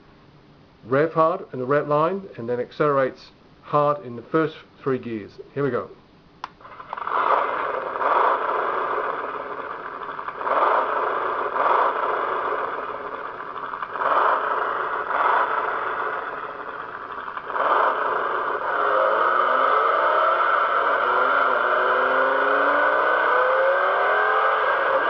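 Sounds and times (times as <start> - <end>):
engine revving through small speaker: 17.4 - 25.0.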